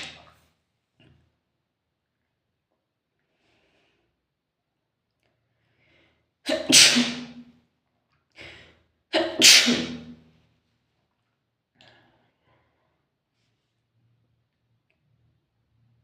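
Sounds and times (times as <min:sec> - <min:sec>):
person sneezing loudly: 0:06.5 - 0:07.5, 0:09.1 - 0:10.2.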